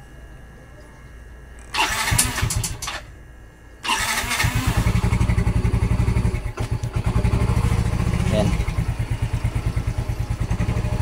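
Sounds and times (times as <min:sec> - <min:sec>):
electric starter cranking: 0:01.7 - 0:03.1, 0:03.8 - 0:09.3
motorcycle engine idling: 0:04.1 - 0:11.0.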